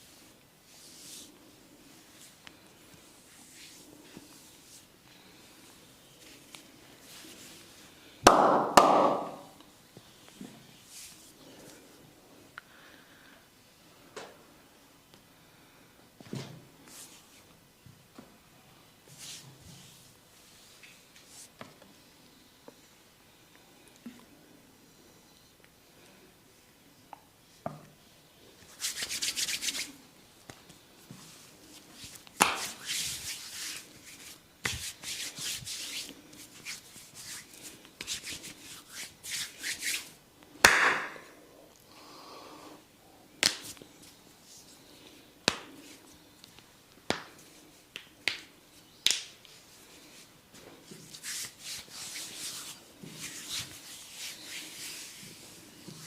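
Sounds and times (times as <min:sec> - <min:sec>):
hands rubbing skin: 0:28.6 - 0:40.2, 0:49.2 - 0:56.0.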